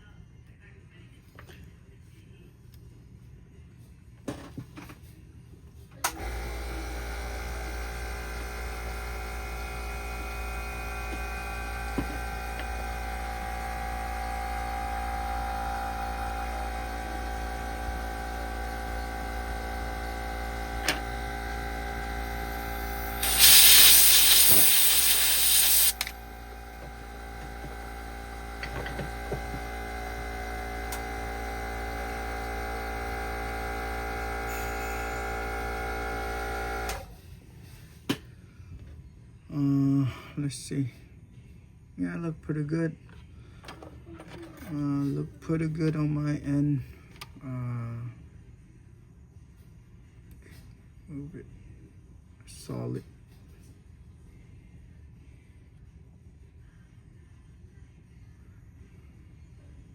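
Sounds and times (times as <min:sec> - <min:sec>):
electric hum of hot air station: 0:05.2 - 0:59.9
hiss of blowing air: 0:23.0 - 0:26.1.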